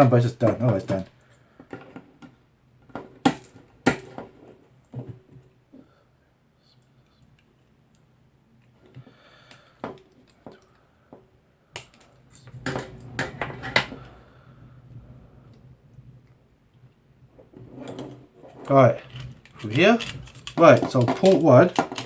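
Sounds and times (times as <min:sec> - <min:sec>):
plastic and metal parts clattering: 0:00.1 - 0:05.5, 0:17.7 - 0:22.0.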